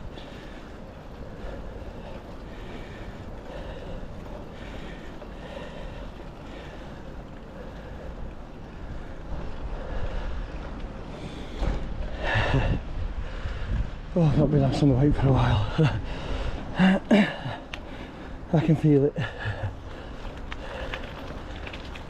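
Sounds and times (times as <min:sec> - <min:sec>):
wind rushing over microphone: 0:07.2 - 0:16.8.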